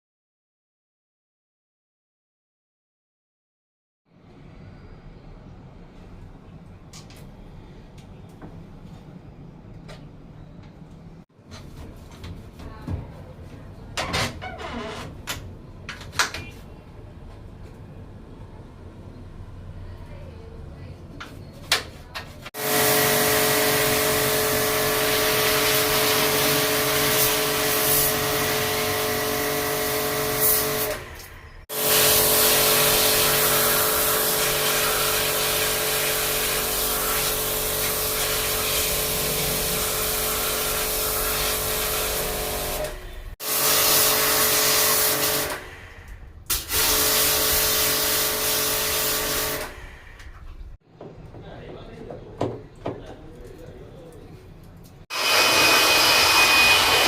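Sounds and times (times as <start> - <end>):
pressure washer motor whine: 22.6 - 45.8, 55.1 - 57.0.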